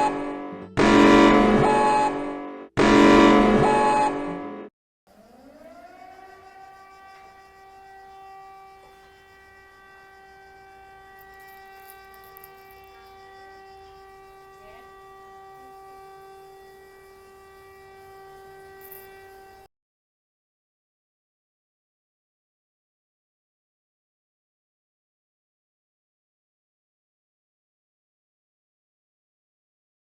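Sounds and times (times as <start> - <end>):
loud sound: 0.0 - 4.7
warning siren winding up: 0.0 - 19.7.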